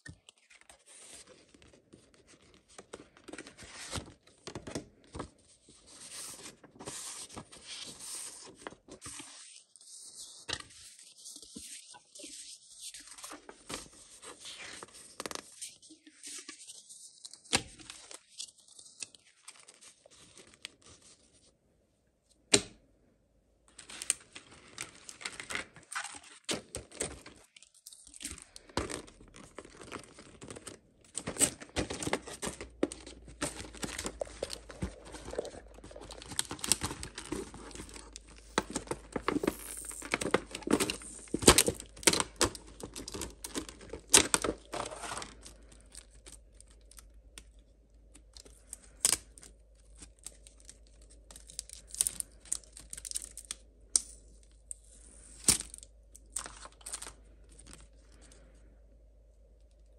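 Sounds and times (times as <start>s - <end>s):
packaging tearing and crinkling: 23.8s - 47.0s, 48.7s - 53.6s.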